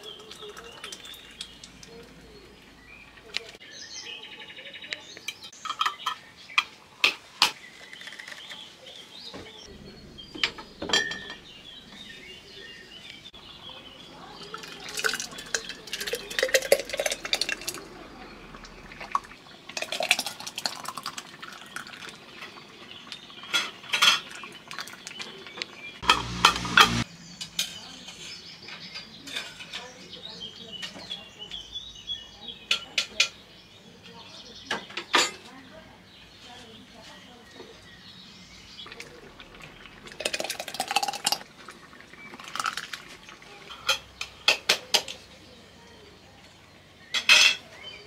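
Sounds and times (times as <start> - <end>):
metal cookware clinking: 10.4 - 11.5, 14.4 - 17.9, 47.2 - 47.7.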